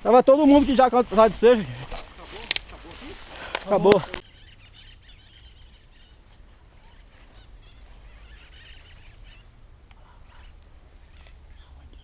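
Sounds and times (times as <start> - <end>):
faint bird chirps: 4.1 - 12.0.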